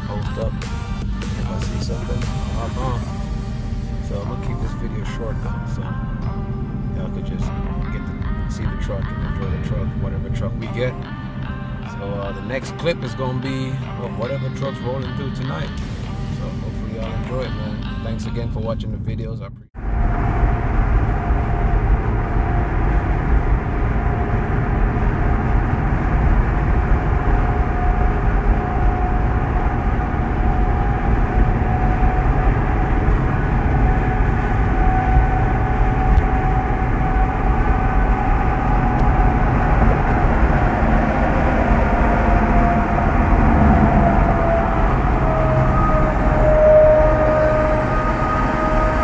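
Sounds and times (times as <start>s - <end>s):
diesel truck engine rumbling: 0.0s - 49.0s
turbo whistle: 41.9s - 49.0s.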